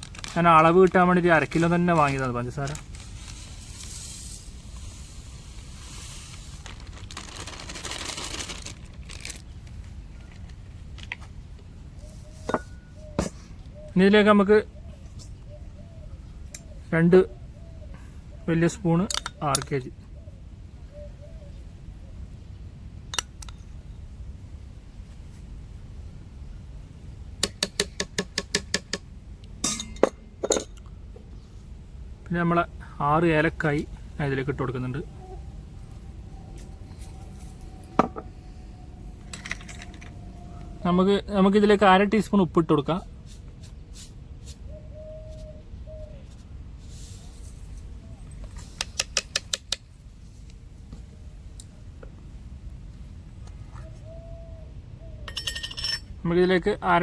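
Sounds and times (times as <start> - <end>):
packet rustling: 0.0 - 11.2.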